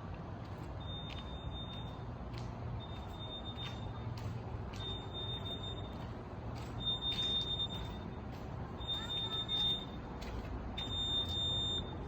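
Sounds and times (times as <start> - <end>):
fire alarm beeping: 0.8 - 2.0, 2.8 - 4.0, 4.7 - 6.1, 6.8 - 8.0, 8.8 - 10.0, 10.8 - 12.0.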